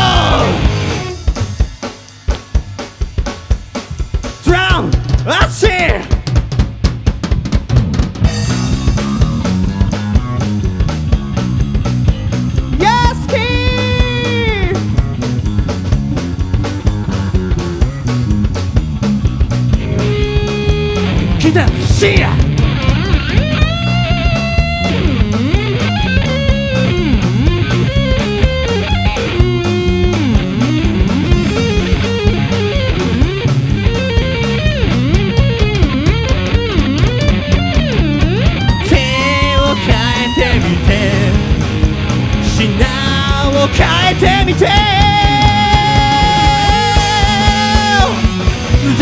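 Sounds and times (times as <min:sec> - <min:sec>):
lead guitar bending notes: 0:00.0 - 0:01.3, 0:19.8 - 0:49.0
bass guitar: 0:00.0 - 0:49.0
drum beat: 0:00.0 - 0:49.0.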